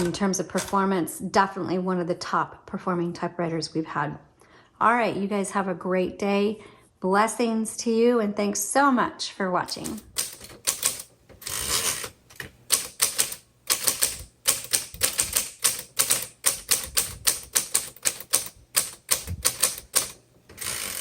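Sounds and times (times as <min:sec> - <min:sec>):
manual typewriter typing: 0:00.0 - 0:00.8, 0:09.7 - 0:21.0.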